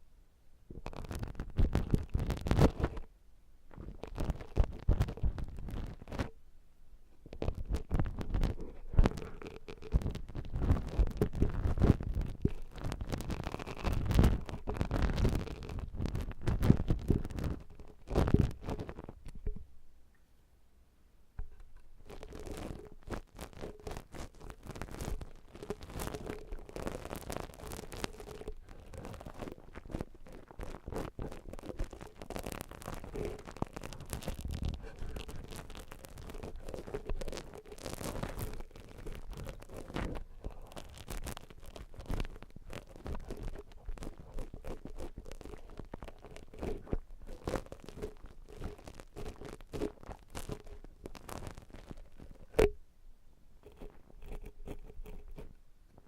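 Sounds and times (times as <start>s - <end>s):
tools scratching ear model: 53.6s - 55.5s.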